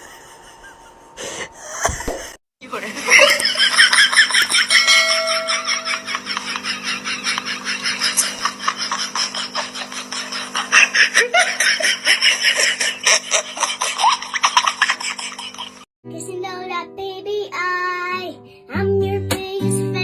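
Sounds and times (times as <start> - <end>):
steady hum: 2.6 - 15.8
loud rapid laughter: 3.0 - 15.8.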